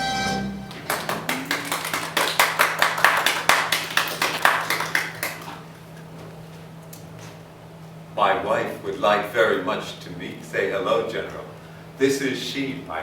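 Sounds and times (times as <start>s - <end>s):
people clapping: 0.7s - 5.7s.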